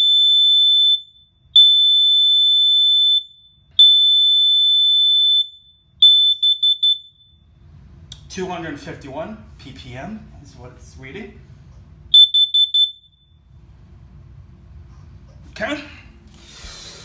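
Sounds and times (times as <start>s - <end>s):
high-pitched alarm beeps: 0.0s - 7.4s, 12.1s - 13.4s
alarm chirps: 0.0s - 7.6s, 12.1s - 13.4s.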